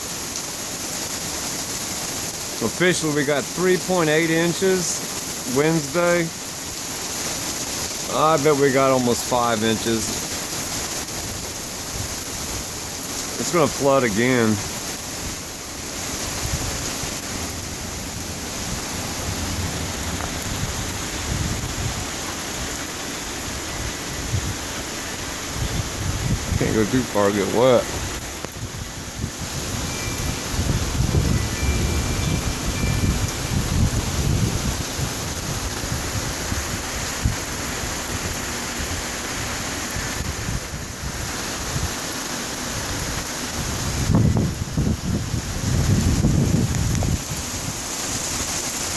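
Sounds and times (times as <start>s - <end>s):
heavy rain pouring: 0.0s - 48.9s
wind buffeting microphone: 15.2s - 48.9s.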